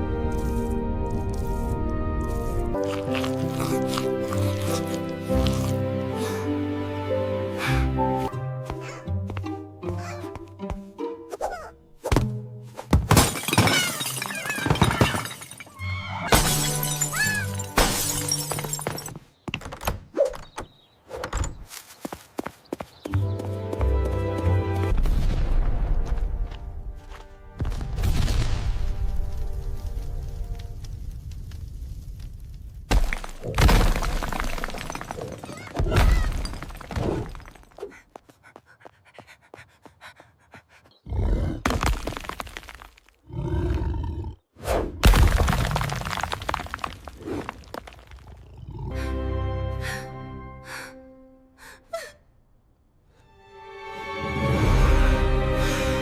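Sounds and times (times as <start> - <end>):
dramatic background music: 53.2 - 56.0.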